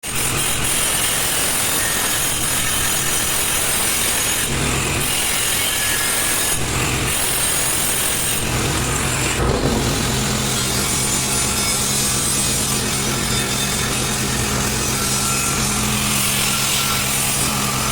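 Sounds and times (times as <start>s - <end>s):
power tool running: 0.1s - 17.9s
deep rumble: 8.4s - 13.2s.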